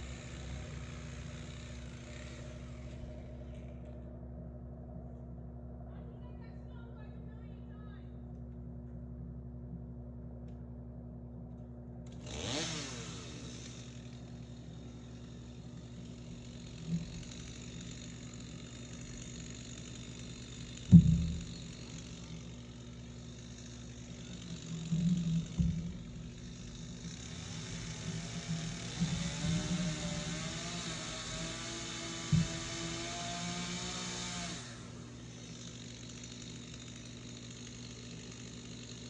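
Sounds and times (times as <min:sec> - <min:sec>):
motor running with whine: 0:00.0 - 0:08.6, 0:11.5 - 0:39.0
soft bumps: 0:20.9 - 0:21.5.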